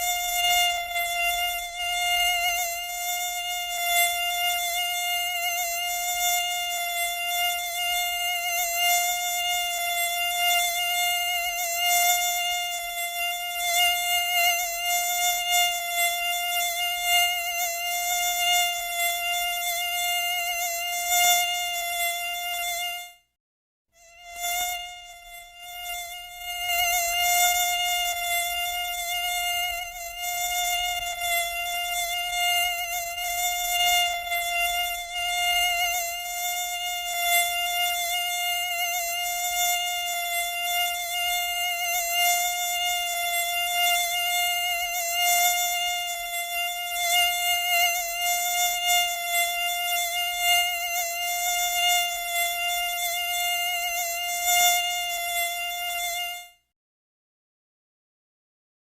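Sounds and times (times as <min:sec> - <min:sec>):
mosquito wings whining: 0:24.0 - 0:56.3.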